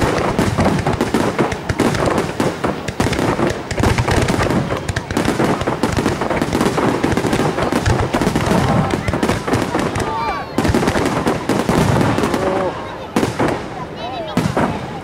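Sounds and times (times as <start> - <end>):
fireworks bursting and crackling: 0.0 - 15.0.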